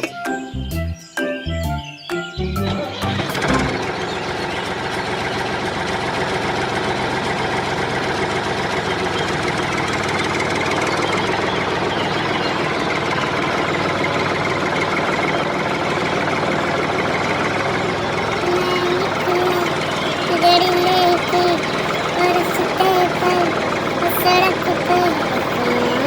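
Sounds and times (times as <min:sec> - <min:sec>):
engine idling with knocking chug: 0:03.1 - 0:26.0.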